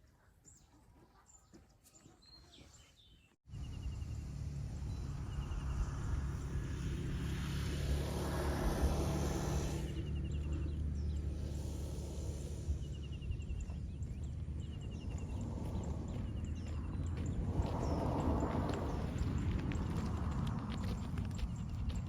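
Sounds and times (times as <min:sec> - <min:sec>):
low rumble: 0:03.5 - 0:22.0
small birds trilling: 0:08.8 - 0:22.0.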